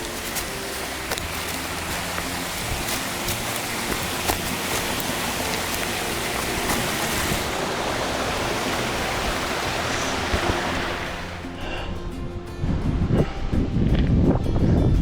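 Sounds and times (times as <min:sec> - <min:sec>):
mountain stream rushing: 0:00.0 - 0:11.8.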